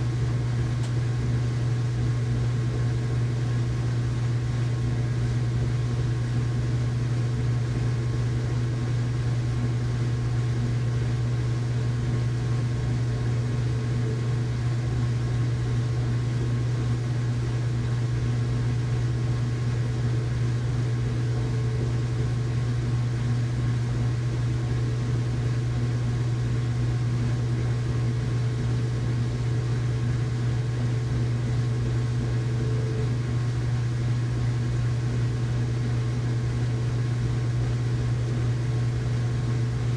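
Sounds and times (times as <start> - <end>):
washing machine running: 0.0 - 39.9.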